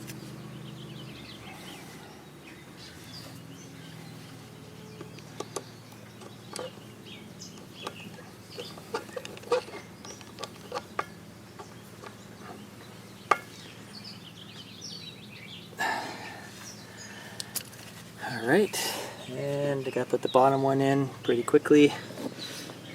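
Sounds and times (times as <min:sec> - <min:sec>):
birds chirping: 0:00.0 - 0:22.9
sharp clicks and taps on metal: 0:07.5 - 0:12.2.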